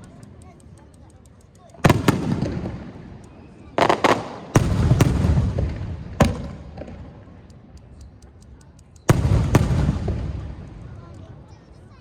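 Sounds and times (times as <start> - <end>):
faint crackling ticks: 0.0 - 4.0, 6.9 - 12.0
fireworks shells booming: 1.8 - 8.2, 9.0 - 11.5.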